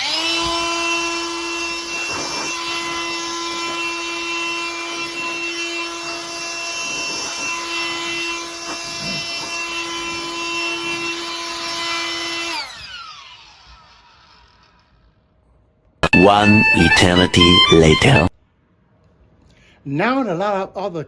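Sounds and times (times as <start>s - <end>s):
blower whining: 0.0s - 13.9s.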